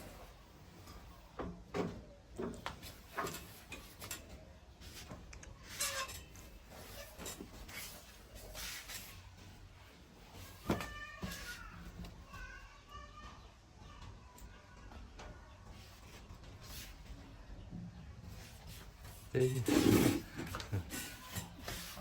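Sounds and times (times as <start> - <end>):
objects being handled: 0.0 - 12.6, 18.2 - 22.0.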